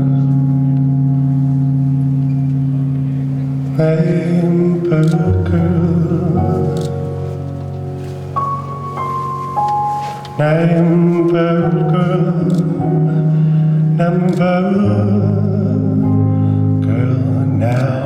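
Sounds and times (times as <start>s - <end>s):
deep bass notes: 0.0s - 8.9s, 10.4s - 18.0s
person singing: 3.7s - 7.5s, 10.2s - 18.0s.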